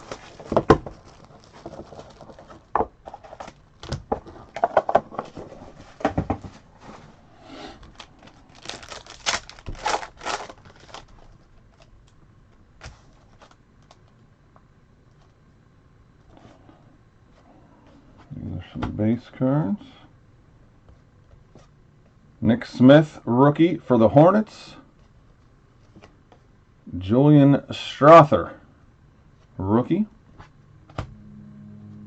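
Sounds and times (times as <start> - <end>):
packaging tearing and crinkling: 0.0 - 4.0, 7.8 - 12.0.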